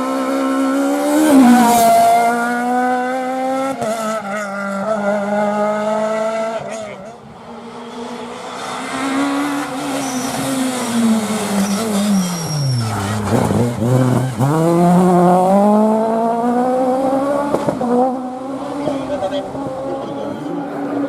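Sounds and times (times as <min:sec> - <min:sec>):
rally car engine revving: 0:00.0 - 0:21.0
tyres squealing: 0:09.8 - 0:13.5.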